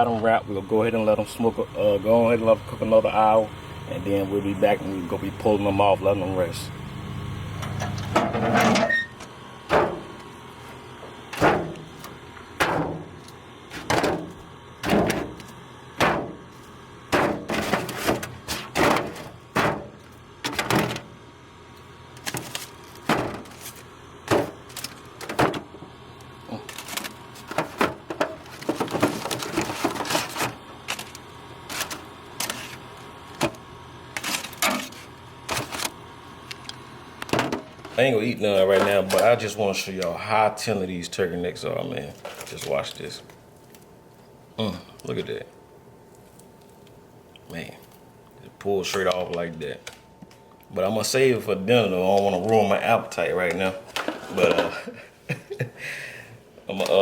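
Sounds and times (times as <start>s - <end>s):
sharp knocks and clatters: 9.7s - 10.3s, 13.7s - 16.4s, 17.1s - 21.1s.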